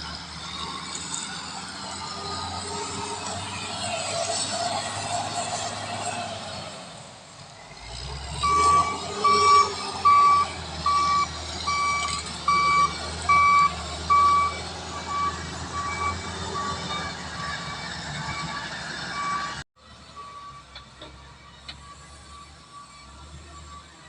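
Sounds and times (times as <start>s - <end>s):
diesel engine rumbling: 0.0s - 24.0s
reversing alarm beeping: 8.4s - 20.8s.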